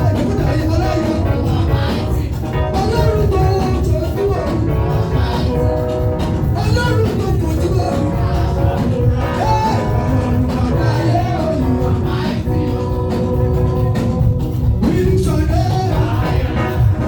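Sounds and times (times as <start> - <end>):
upbeat dance music with singing: 0.0 - 17.0.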